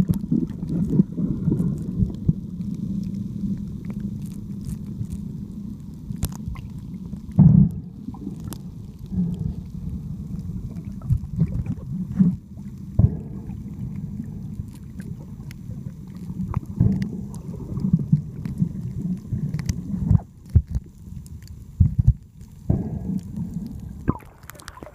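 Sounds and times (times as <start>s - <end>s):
muffled rumble of sea water: 0.0s - 24.9s.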